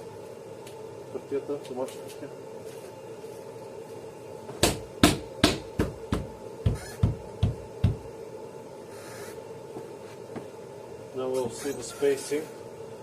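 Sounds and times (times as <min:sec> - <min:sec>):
sharp knocks: 0:04.6 - 0:08.0.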